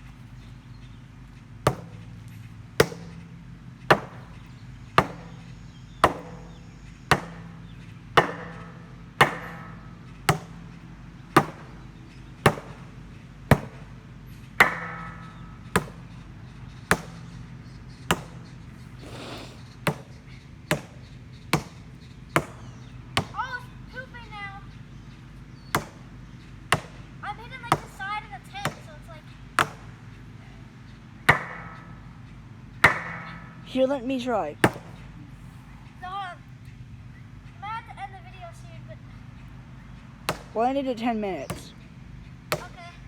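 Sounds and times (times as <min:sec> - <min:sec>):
sledgehammer striking steel: 0:01.7 - 0:02.0, 0:02.8 - 0:14.0, 0:14.6 - 0:16.2, 0:16.9 - 0:17.4, 0:18.1 - 0:18.6, 0:19.8 - 0:21.0, 0:21.6 - 0:23.4, 0:31.3 - 0:33.7.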